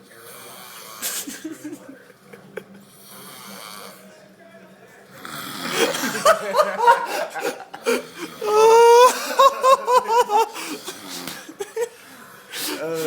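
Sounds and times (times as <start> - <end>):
person laughing: 5.9 - 10.8.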